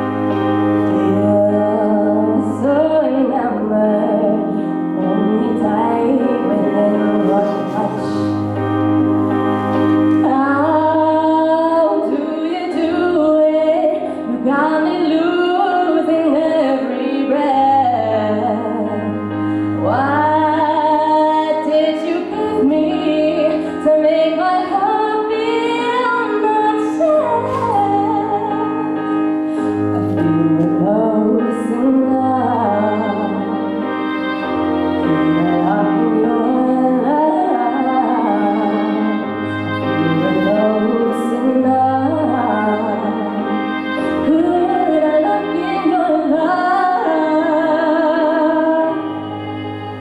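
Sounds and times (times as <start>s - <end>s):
instrumental accompaniment: 0.0s - 50.0s
woman singing slow melody: 0.8s - 8.6s, 10.1s - 49.9s.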